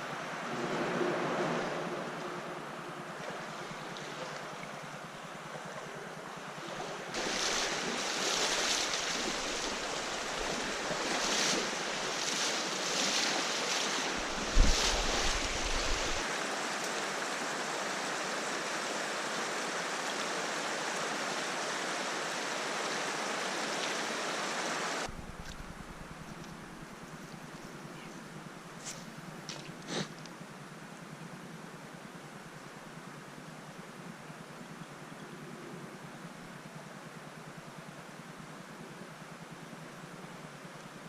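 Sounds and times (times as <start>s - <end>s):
mountain stream rushing: 0.0s - 26.2s.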